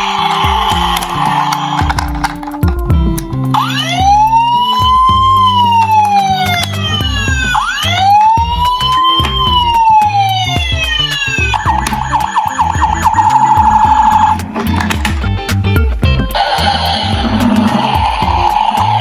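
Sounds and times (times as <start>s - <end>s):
police siren wailing: 0.0s - 2.7s, 3.5s - 14.4s
background music with bass: 0.0s - 19.0s.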